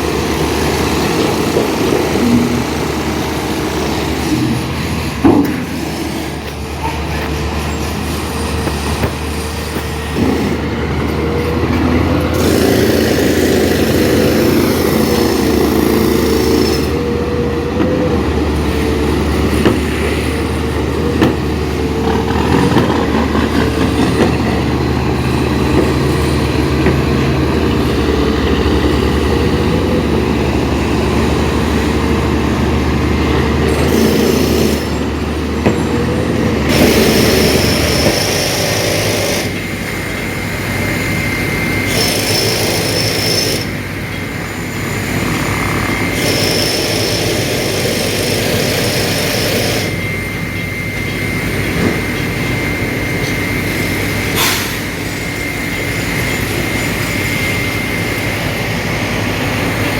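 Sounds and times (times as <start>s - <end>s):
diesel construction machinery running: 0.0s - 59.9s
wavering whine: 49.7s - 59.9s.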